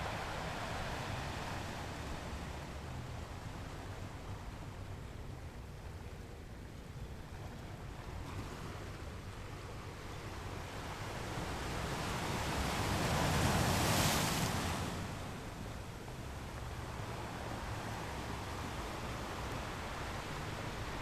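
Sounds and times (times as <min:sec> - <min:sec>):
ocean waves on shore: 0:00.0 - 0:21.0.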